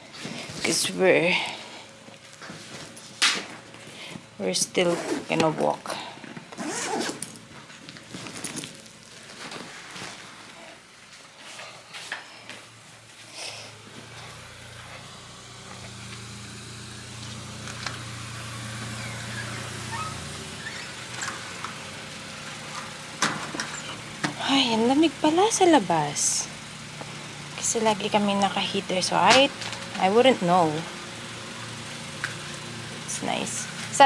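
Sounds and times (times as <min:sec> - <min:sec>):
low motor hum: 0:12.8 - 0:34.0.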